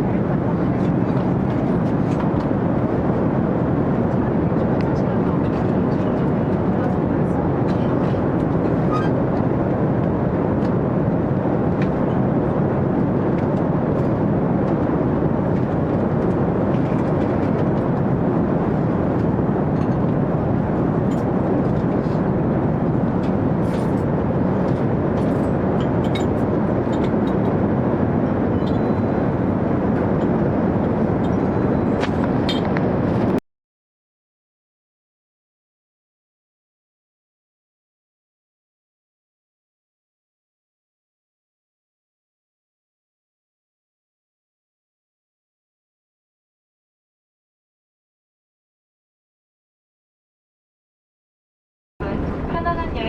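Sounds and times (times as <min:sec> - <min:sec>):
airliner cabin roar: 0:00.0 - 0:33.4, 0:52.0 - 0:53.0.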